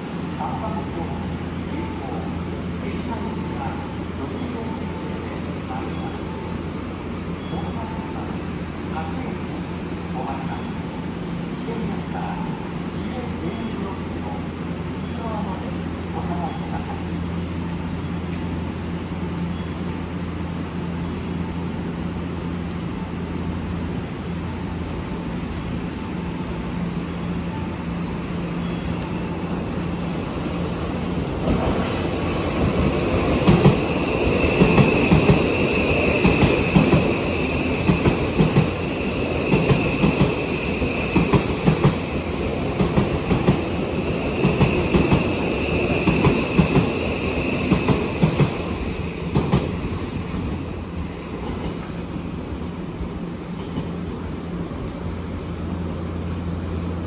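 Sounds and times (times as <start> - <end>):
train high whine: 0.0 - 57.0
wheels clacking over rail joints: 30.9 - 52.2.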